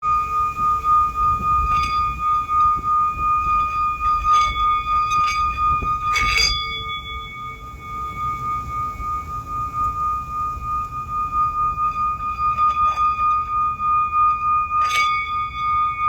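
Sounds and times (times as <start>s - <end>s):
singing bowl ringing: 0.0s - 16.0s
singing bowl strikes: 0.1s - 16.0s.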